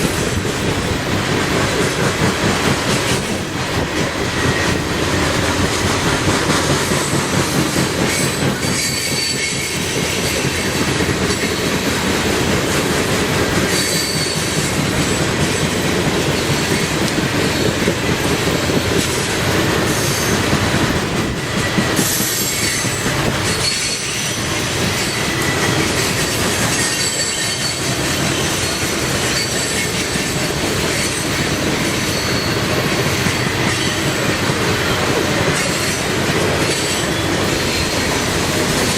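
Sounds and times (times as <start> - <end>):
clickety-clack over rail joints: 0.0 - 38.9
train cars rumbling past: 0.0 - 38.9
high wheel squeal: 8.0 - 11.6, 13.7 - 14.8, 21.4 - 34.2.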